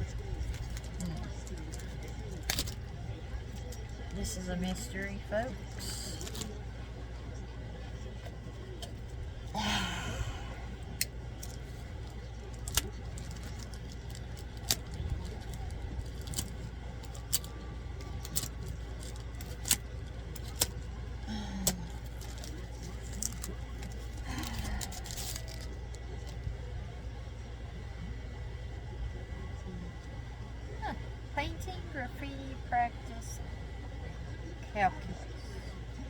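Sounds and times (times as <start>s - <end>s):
steady low hum: 0.0s - 36.0s
packaging crinkling and rustling: 0.1s - 2.9s, 11.0s - 21.0s, 21.6s - 26.5s.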